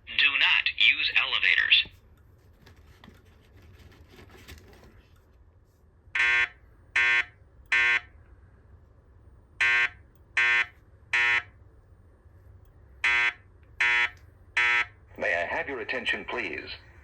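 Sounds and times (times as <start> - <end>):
fire alarm beeping: 6.2 - 8.1, 9.6 - 11.5, 13.0 - 15.0.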